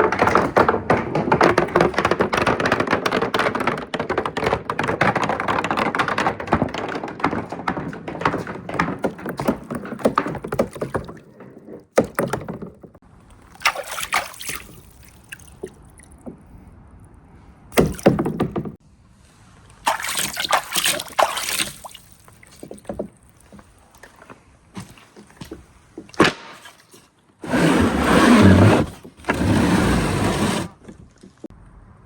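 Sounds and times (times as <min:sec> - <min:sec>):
marbles clattering down wooden run: 0:00.0 - 0:11.2.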